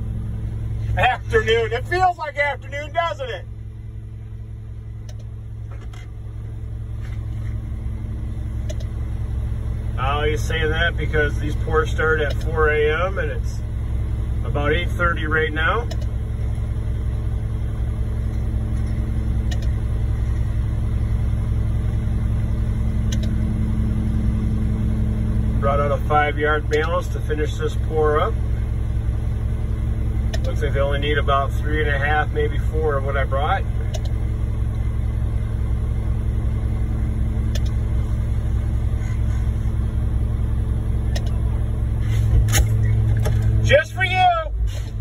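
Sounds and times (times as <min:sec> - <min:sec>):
diesel engine humming: 0:00.0 - 0:45.0
brief click: 0:19.5 - 0:19.8, 0:23.1 - 0:23.4, 0:37.5 - 0:37.8, 0:41.1 - 0:41.4.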